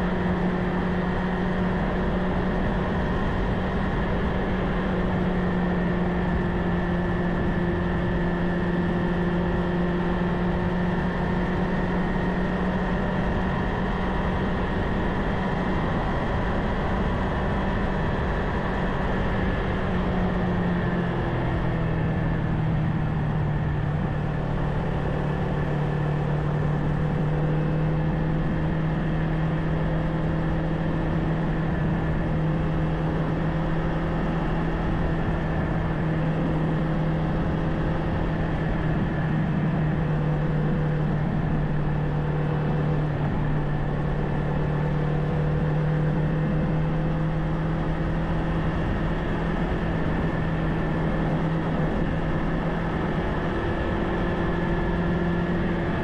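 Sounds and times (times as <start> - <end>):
motorcycle engine running steadily: 0.0 - 56.0.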